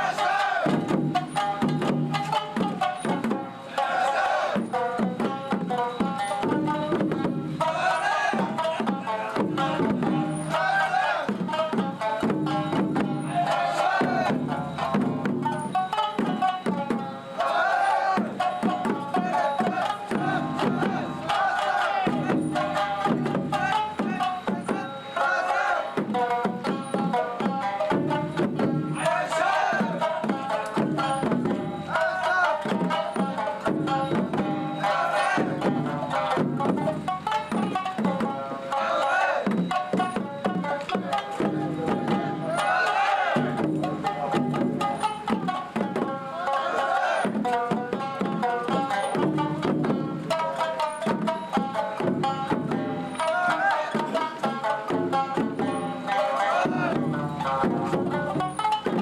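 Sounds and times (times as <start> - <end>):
regular drumbeats: 0.0 - 59.0.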